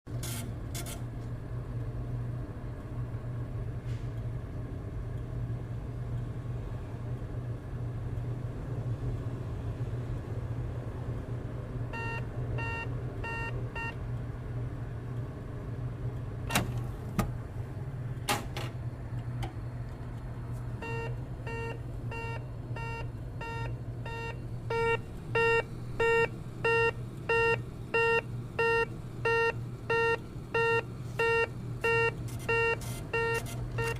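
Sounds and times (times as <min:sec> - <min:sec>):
machine beeps: 0:11.9 - 0:14.0, 0:20.8 - 0:33.9
cash machine humming: 0:15.8 - 0:33.9
machine clicks and clunks: 0:16.4 - 0:17.4, 0:18.2 - 0:20.2.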